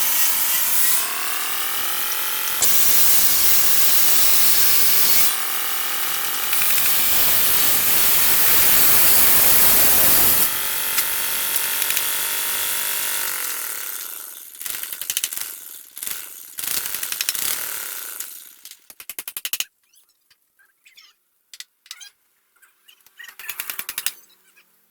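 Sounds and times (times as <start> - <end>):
power tool whining and winding down: 0.0 - 18.7
quick clicks: 23.0 - 24.2.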